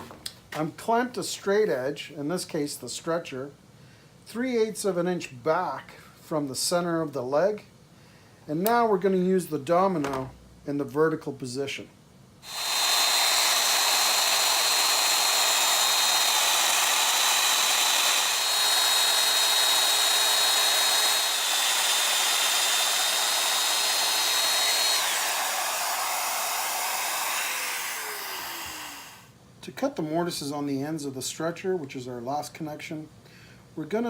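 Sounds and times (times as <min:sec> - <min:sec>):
power tool motor whining: 0:12.4 - 0:29.3.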